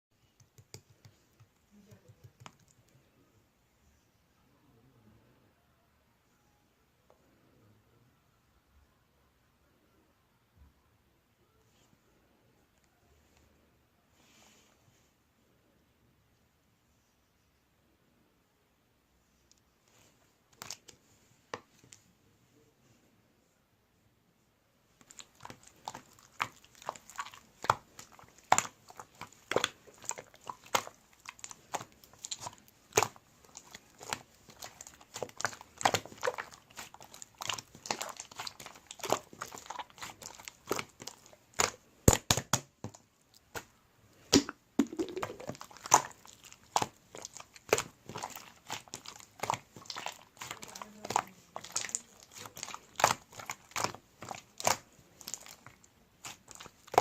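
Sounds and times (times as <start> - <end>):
slime squeezed with crackling pops: 25.0 - 42.7, 44.3 - 57.0.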